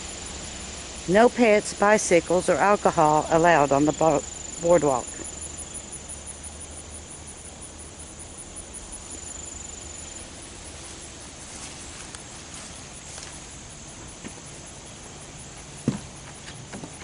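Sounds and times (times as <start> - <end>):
insect high pulsing chirp: 0.0 - 17.0
insect high thin trill: 0.0 - 17.0.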